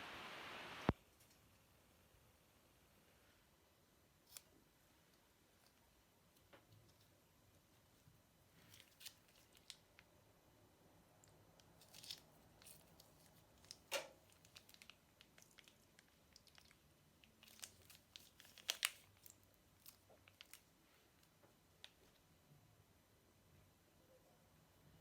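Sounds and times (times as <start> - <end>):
crinkling and crackling: 5.6 - 10.1, 11.2 - 22.3.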